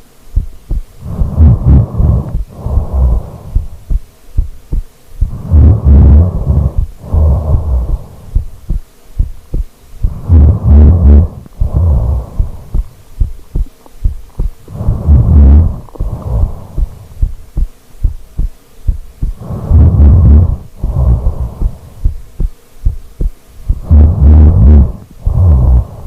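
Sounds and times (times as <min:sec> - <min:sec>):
soft breath: 0:00.7 - 0:09.4, 0:10.0 - 0:26.0
person snoring heavily: 0:01.0 - 0:04.0, 0:05.2 - 0:08.5, 0:10.0 - 0:13.0, 0:14.3 - 0:17.4, 0:19.2 - 0:22.2, 0:23.6 - 0:26.0.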